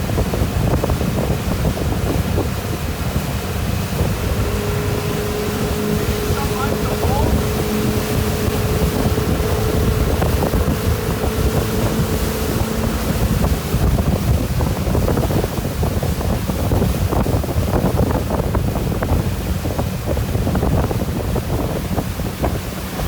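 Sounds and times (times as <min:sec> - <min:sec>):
motorboat engine drone: 0:00.0 - 0:23.0
water rushing and splashing: 0:00.0 - 0:23.0
wind buffeting microphone: 0:00.0 - 0:23.0.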